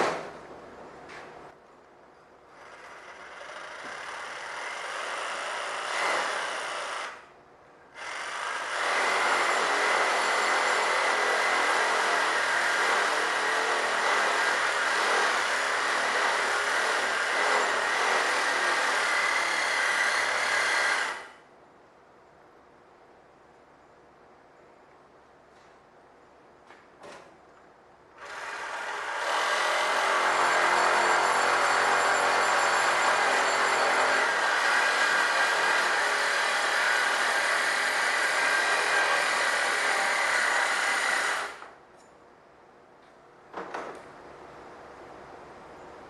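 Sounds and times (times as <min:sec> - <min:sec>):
power tool working metal: 0:08.0 - 0:21.4, 0:28.2 - 0:41.7.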